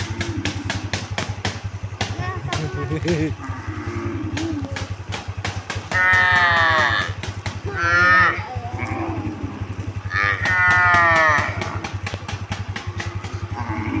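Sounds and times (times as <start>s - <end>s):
cows mooing: 0.0s - 0.9s, 2.8s - 4.7s, 5.9s - 12.1s, 12.8s - 14.0s
rapid low pulsing: 0.0s - 14.0s.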